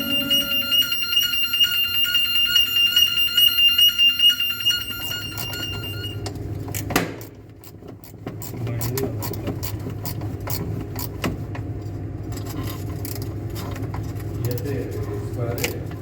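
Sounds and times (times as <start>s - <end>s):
alarm buzzer: 0.0s - 6.2s.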